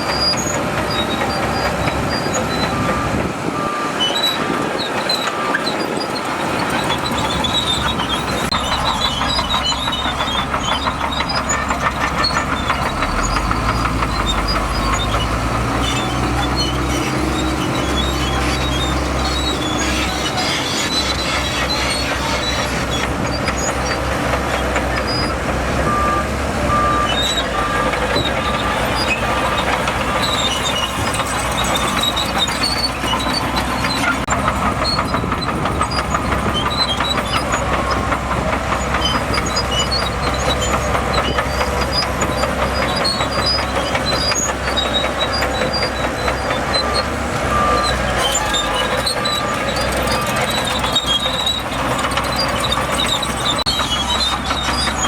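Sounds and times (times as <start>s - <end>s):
diesel engine running: 0.0s - 55.0s
steel tracks clanking: 0.0s - 55.0s
reversing alarm beeps: 25.8s - 28.2s, 46.7s - 49.6s.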